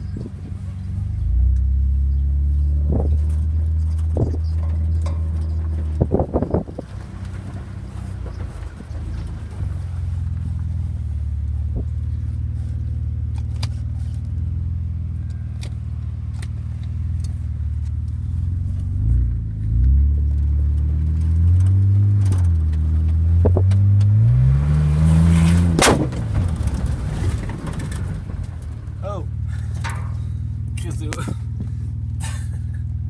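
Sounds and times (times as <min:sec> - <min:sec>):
car engine idling and revving: 0:00.0 - 0:33.0
loud sharp crack: 0:25.4 - 0:28.0.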